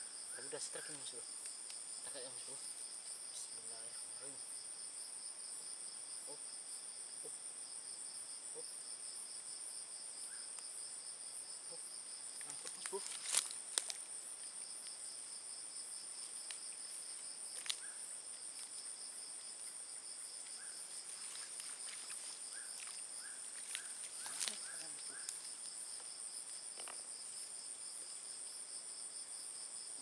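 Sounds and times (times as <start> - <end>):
night insects trilling: 0.0 - 30.0.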